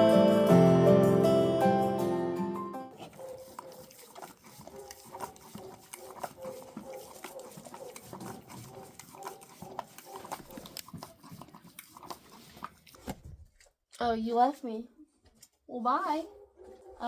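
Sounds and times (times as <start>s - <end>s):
animal breathing: 2.9s - 13.7s
crunches and rustles of nibbling: 2.9s - 14.0s.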